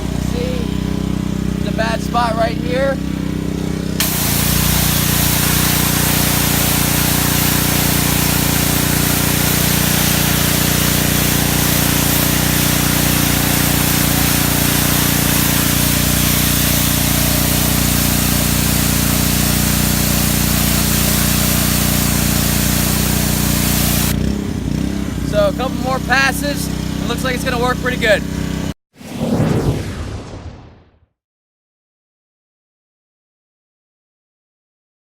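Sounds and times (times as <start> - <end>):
pressure washer engine hum: 0.0 - 28.7
high-pressure water spray hissing: 4.0 - 24.2.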